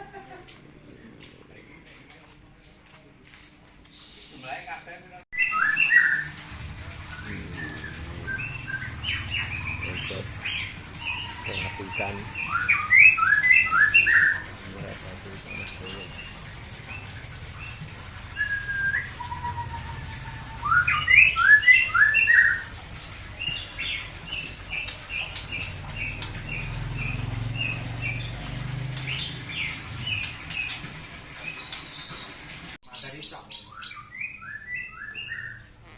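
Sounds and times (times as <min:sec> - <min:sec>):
birds singing and whistling: 0:05.4 - 0:35.9.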